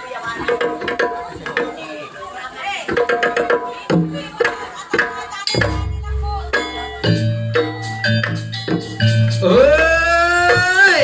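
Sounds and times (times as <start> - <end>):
percussion ensemble drums: 0.0 - 11.0
held deep bass tone: 5.6 - 11.0.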